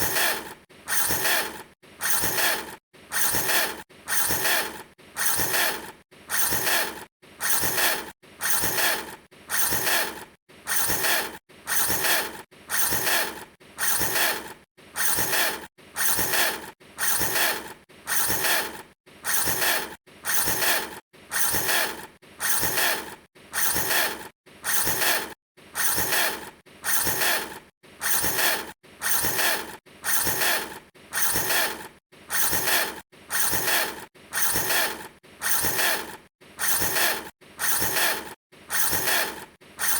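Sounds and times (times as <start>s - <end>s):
short rasping mechanical noise: 0.0s - 39.9s.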